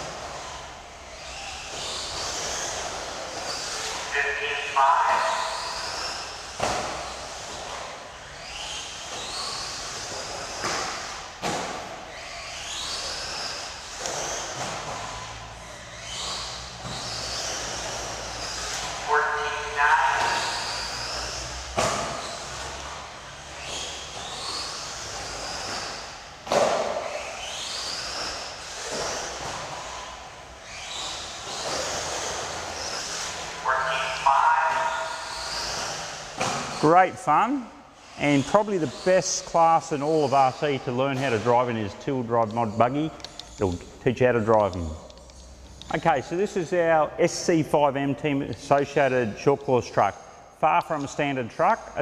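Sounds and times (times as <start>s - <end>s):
rc car thudding on track: 0.0s - 4.1s, 5.2s - 19.1s, 19.9s - 33.7s, 34.4s - 36.9s
rc car motor whining: 0.0s - 47.5s.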